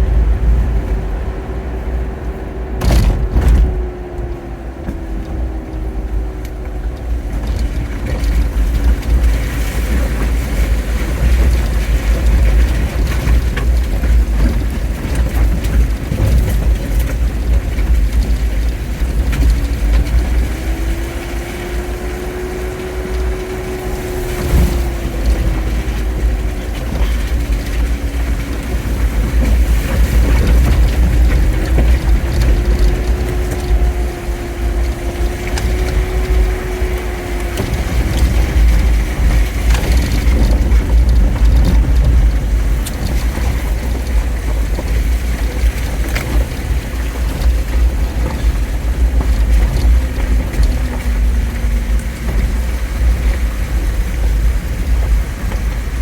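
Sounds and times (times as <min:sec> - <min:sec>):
car engine note: 0:00.0 - 0:09.7
road and wind rumble: 0:00.0 - 0:56.0.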